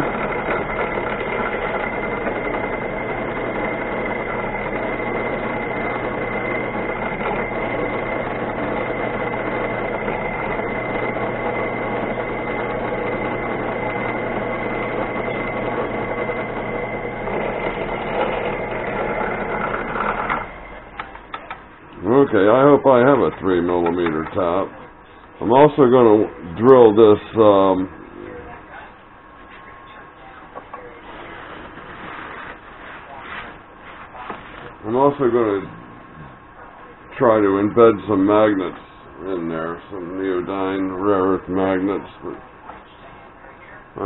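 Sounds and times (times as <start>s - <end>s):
electric motor high whine: 0.0s - 21.0s
drill bit boring steel: 0.0s - 21.4s.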